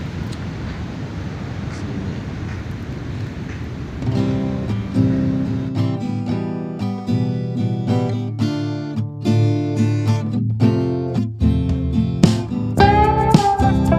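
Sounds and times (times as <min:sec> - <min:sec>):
wind and surf noise: 0:00.0 - 0:06.9
acoustic guitar music: 0:04.0 - 0:13.9.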